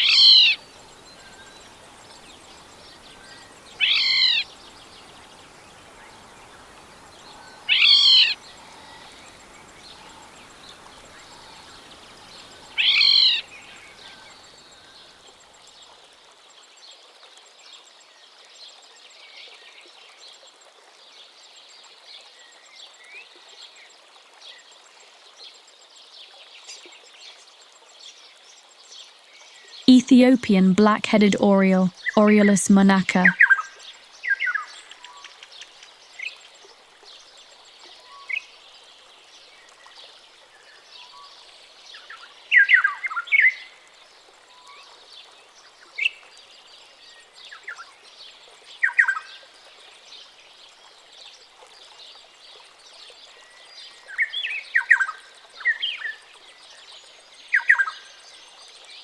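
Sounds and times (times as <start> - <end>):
oriole calling: 0.0 - 14.4
faint bird chirps: 0.0 - 14.5
background hiss: 0.0 - 15.3.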